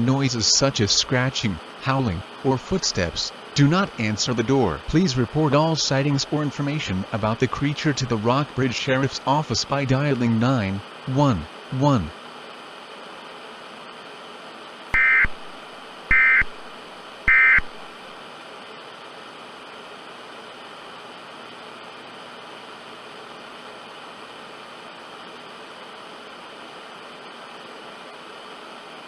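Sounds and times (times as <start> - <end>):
static hiss: 0.0 - 19.0
alert data tone bursts: 15.0 - 15.4, 16.1 - 16.5, 17.3 - 17.7.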